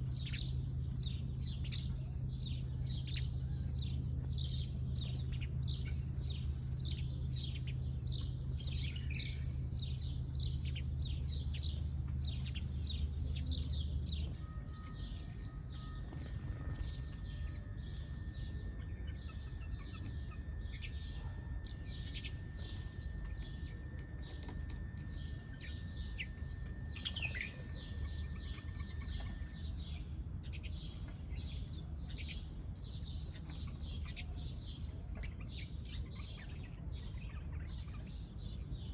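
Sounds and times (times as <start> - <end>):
low hum: 0.0 - 34.2
sparrows chirping: 0.0 - 38.9
thin steady high tone: 12.4 - 30.3.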